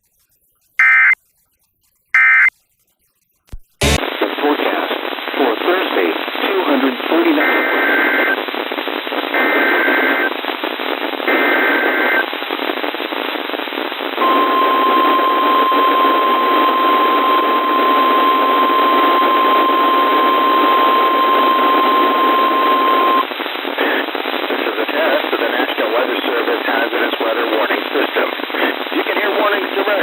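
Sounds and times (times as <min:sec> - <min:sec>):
buzzy data bursts: 0:03.5 - 0:04.0, 0:14.2 - 0:23.3
warning alarm tone: 0:03.5 - 0:04.0, 0:14.2 - 0:23.2
radio static: 0:03.5 - 0:30.0.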